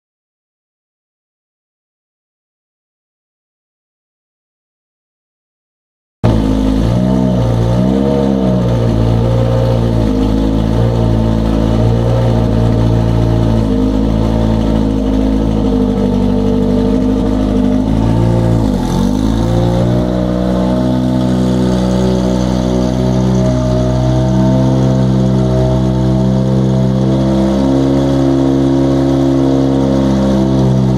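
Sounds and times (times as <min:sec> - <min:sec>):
race car engine idling: 0:06.2 - 0:28.7.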